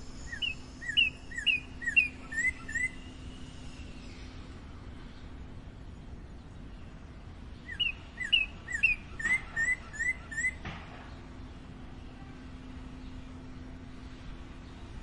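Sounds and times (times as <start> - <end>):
bird singing whistled notes: 0.0 - 4.4, 7.6 - 10.6
faint low hum: 0.0 - 15.0.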